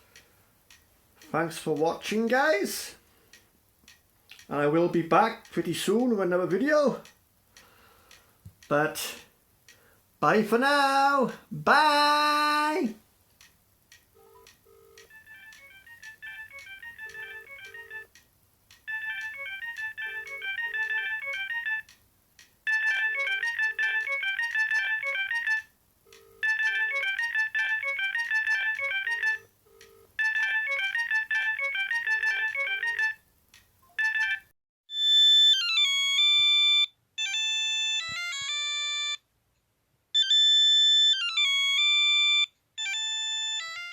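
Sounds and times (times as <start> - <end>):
polyphonic phone ringtone melody: 14.2 - 18.1, 18.9 - 21.9, 22.7 - 33.2, 33.9 - 39.2, 40.2 - 43.9.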